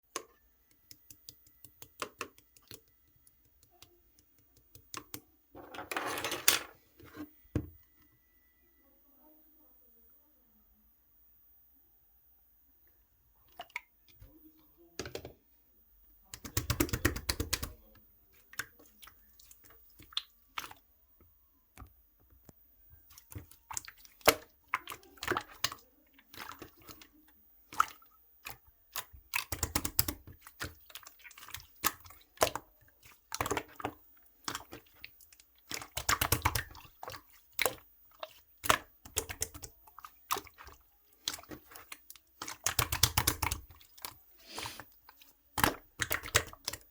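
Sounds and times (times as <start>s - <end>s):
wet clicks and pops: 0.1s - 5.3s, 16.3s - 17.8s, 27.7s - 32.6s, 34.5s - 36.9s, 38.6s - 44.2s, 44.8s - 46.9s
slime squished by hand: 27.8s - 46.9s.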